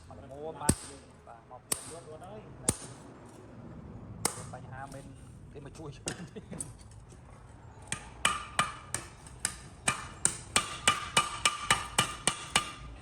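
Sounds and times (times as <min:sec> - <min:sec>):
hammer striking metal on anvil: 0:07.9 - 0:12.9.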